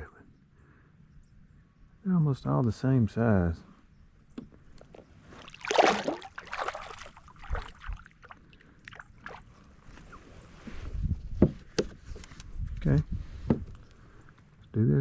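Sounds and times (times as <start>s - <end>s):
water splashing beside a kayak: 4.8s - 9.7s.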